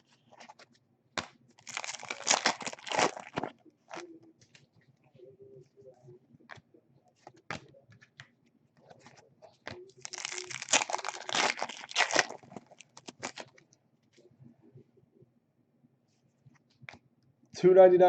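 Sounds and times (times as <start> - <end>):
foil wrapper tearing and crinkling: 1.6 - 4.0, 10.0 - 13.6.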